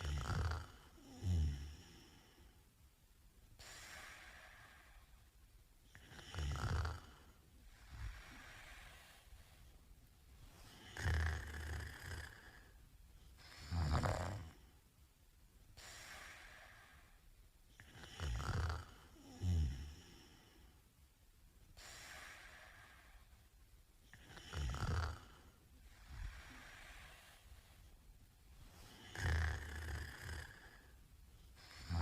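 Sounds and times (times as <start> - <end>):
man snoring: 0.0 - 2.4, 5.9 - 9.1, 10.7 - 12.7, 13.5 - 14.6, 17.8 - 20.6, 24.1 - 25.6, 28.8 - 30.9, 31.7 - 32.0
snort: 0.0 - 2.5, 3.6 - 5.2, 5.9 - 9.6, 10.6 - 12.8, 13.4 - 14.8, 15.8 - 17.2, 17.8 - 20.6, 21.8 - 23.3, 24.1 - 27.9, 28.6 - 32.0
breathy hisses: 3.6 - 5.3, 6.0 - 9.7, 15.8 - 17.2, 21.8 - 23.5, 24.2 - 28.0, 28.6 - 32.0.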